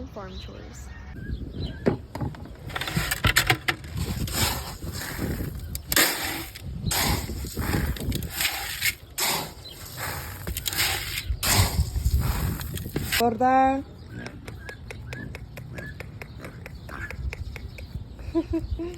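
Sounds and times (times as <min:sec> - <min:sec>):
footsteps crunching: 0:03.8 - 0:13.2.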